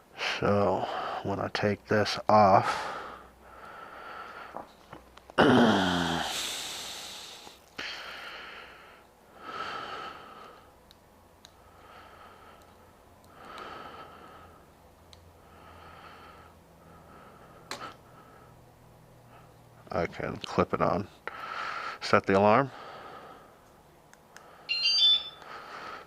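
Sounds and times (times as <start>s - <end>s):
man breathing close to microphone: 2.6s - 4.8s, 5.7s - 10.8s, 11.6s - 14.7s, 15.4s - 18.6s, 21.2s - 22.0s, 22.7s - 23.6s, 25.4s - 26.0s
man sighing loudly: 5.4s - 6.8s.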